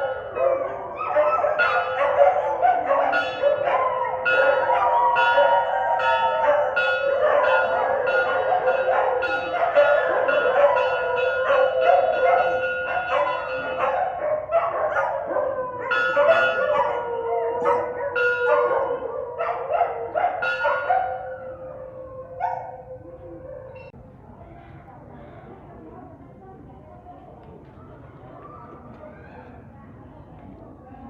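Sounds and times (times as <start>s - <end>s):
dogs barking and yipping: 0.0s - 23.9s.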